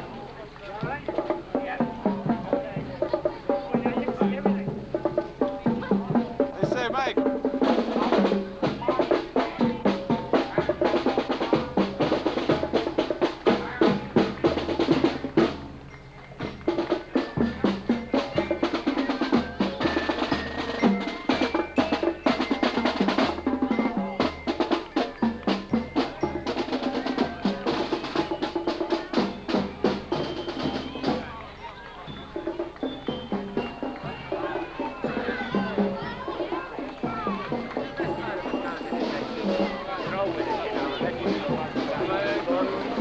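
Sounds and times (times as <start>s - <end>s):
snare drums rolling: 0.0s - 15.8s, 16.4s - 43.0s
bass drum march beat: 0.0s - 43.0s
high melody: 14.6s - 43.0s.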